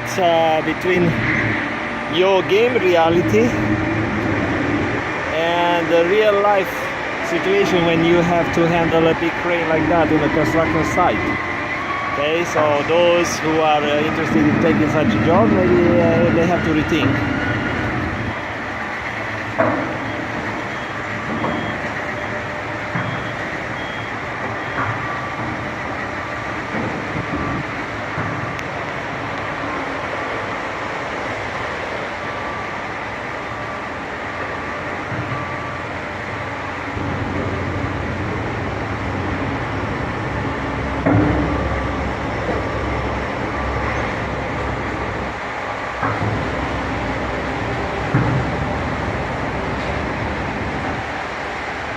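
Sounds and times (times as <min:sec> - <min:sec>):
low rumble: 0:00.0 - 0:06.0
construction site noise: 0:00.0 - 0:51.9
traffic noise: 0:00.0 - 0:51.9
electronic warning beep: 0:19.9 - 0:26.3.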